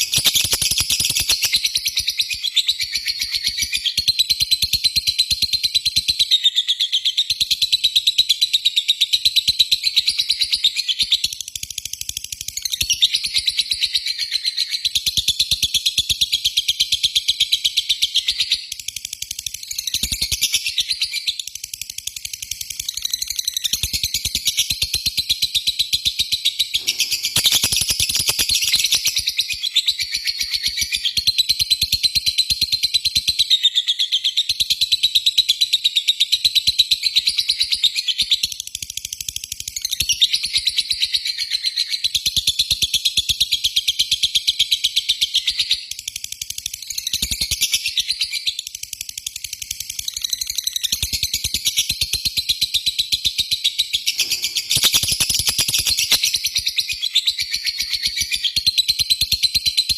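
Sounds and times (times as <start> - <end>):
lovebird chattering: 0.0 - 2.4, 26.8 - 29.3, 54.0 - 56.6.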